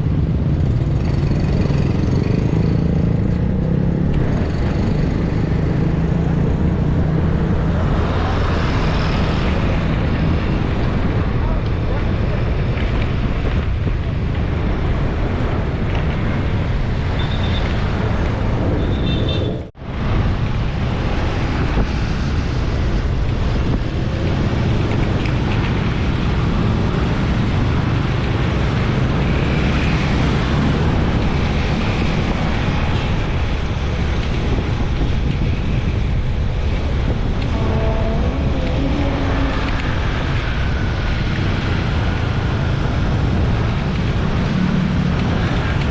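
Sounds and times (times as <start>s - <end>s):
road traffic noise: 0.0s - 45.9s
wind buffeting microphone: 19.8s - 45.9s.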